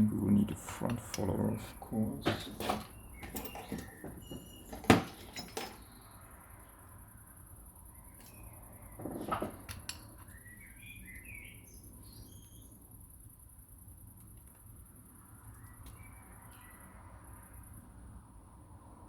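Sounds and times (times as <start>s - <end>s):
bird chirping: 10.2s - 12.8s.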